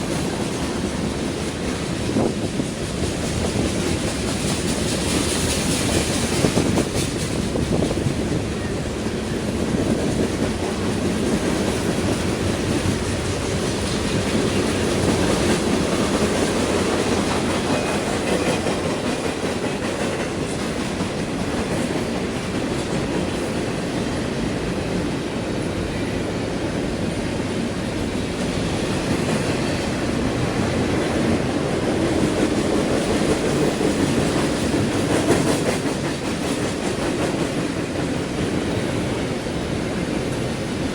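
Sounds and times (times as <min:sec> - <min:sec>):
train wheels on rails: 0:00.0 - 0:40.9.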